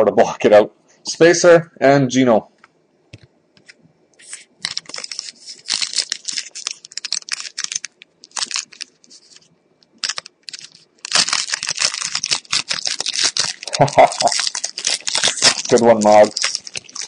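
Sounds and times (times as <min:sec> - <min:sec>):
cards being handled: 0:03.6 - 0:13.6
wrapper crinkling: 0:04.2 - 0:17.0.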